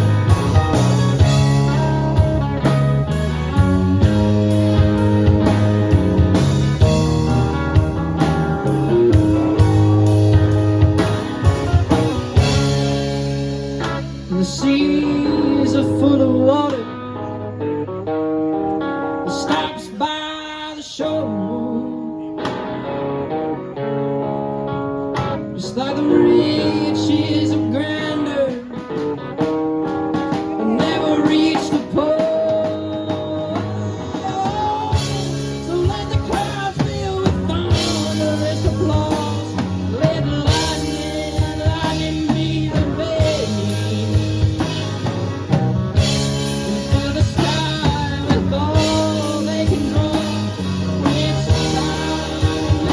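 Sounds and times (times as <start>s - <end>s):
drum kit and cymbals: 0.0s - 14.7s, 28.5s - 52.9s
electric guitar: 0.0s - 52.9s
person singing: 13.9s - 17.5s, 18.8s - 23.1s, 25.2s - 29.2s, 30.1s - 52.9s.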